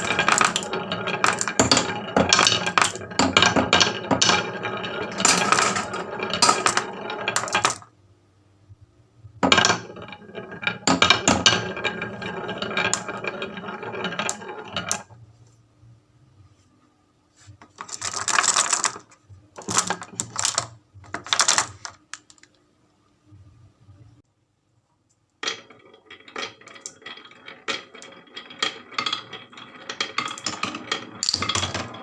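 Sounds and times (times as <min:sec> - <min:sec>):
marbles rattling down wooden run: 0:00.0 - 0:07.8, 0:09.4 - 0:15.1, 0:17.8 - 0:22.5, 0:25.4 - 0:32.0.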